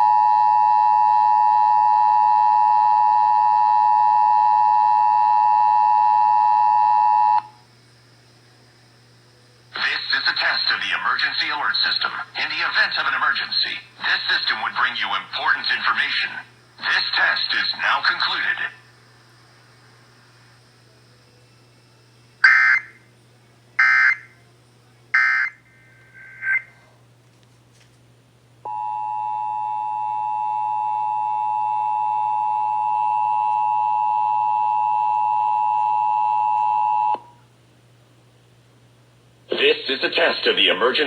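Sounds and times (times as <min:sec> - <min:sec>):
digital data tone bursts: 0:22.4 - 0:23.0, 0:23.8 - 0:24.3, 0:25.2 - 0:26.7.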